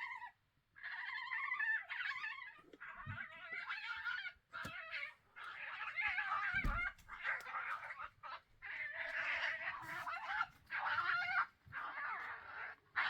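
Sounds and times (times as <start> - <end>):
badgers squealing and screaming: 0.0 - 13.0.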